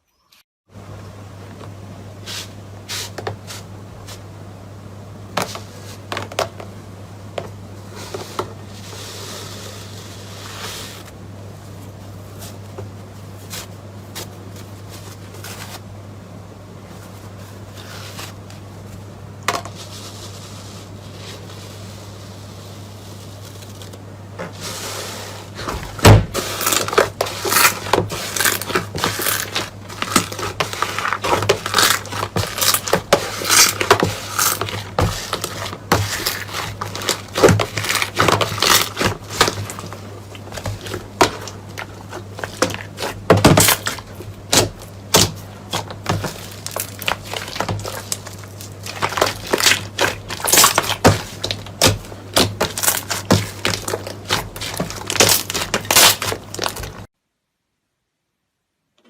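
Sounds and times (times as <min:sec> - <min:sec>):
brittle material crunching: 0:25.6 - 0:57.1.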